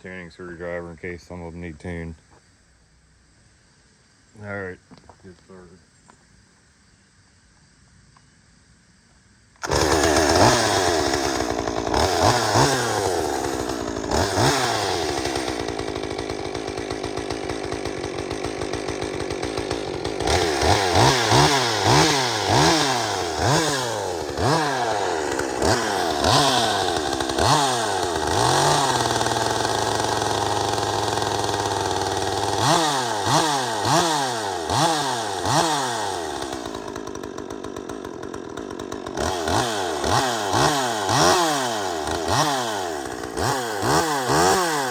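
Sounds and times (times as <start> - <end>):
chainsaw revving and idling: 9.6 - 44.9.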